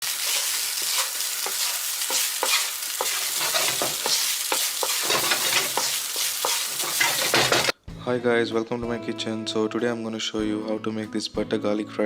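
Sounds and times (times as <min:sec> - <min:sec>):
food sizzling in a pan: 0:00.0 - 0:07.8
spatula scraping a pan: 0:00.1 - 0:07.7.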